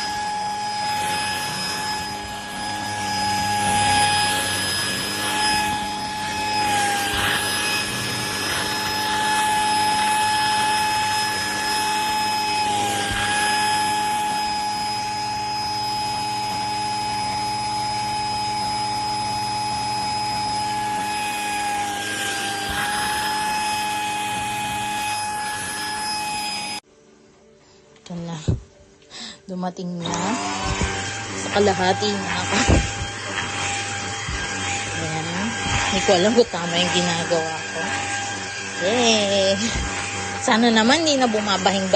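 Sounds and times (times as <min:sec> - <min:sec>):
handheld vacuum cleaner whining: 0:00.0 - 0:26.9, 0:30.0 - 0:41.9.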